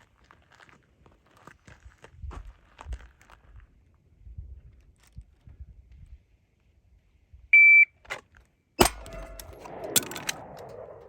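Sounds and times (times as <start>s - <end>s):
shot timer beep: 7.6s - 7.9s
pistol shot with metallic ringing: 8.8s - 11.0s
sharp reload clack: 8.8s - 11.0s.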